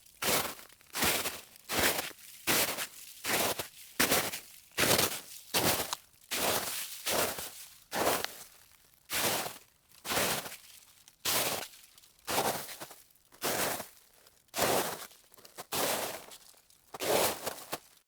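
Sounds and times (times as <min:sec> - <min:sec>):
footsteps crunching on gravel: 0:00.2 - 0:08.5.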